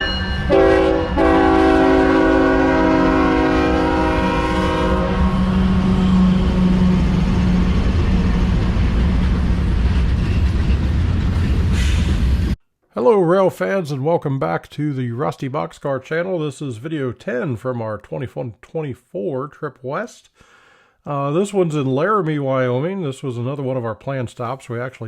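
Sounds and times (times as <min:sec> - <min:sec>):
locomotive air horn: 0:00.0 - 0:07.7
rumble of passing train: 0:00.0 - 0:12.6.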